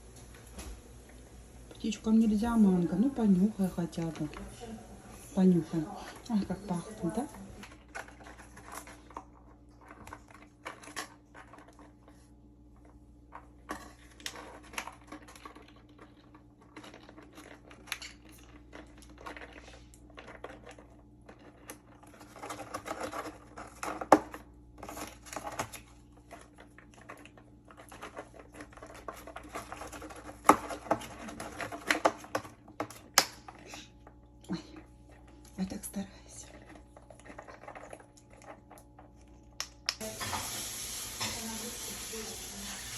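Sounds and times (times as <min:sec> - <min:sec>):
parrot tearing cardboard: 0:13.9 - 0:33.6.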